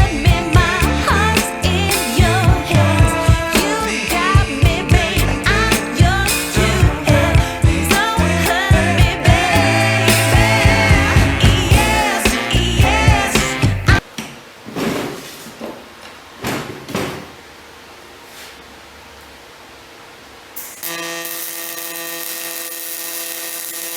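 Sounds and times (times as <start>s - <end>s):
pop song with vocals and beat: 0.0s - 14.0s.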